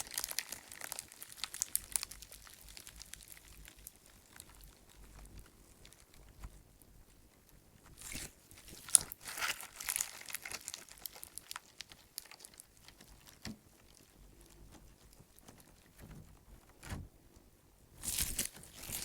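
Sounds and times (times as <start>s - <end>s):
slime squeezed by hand crackling: 0.0s - 5.2s, 7.9s - 13.5s, 18.0s - 19.0s.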